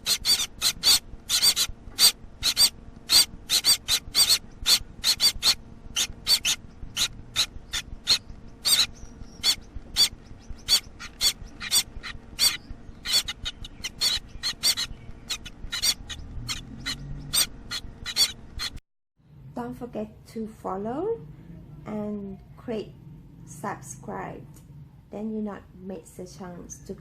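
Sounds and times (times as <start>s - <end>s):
baby finches calling: 0.0s - 18.8s.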